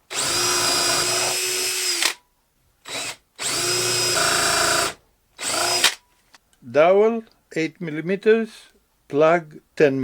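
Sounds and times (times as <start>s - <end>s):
electric drill boring into wood: 0.1s - 2.2s, 2.8s - 6.0s.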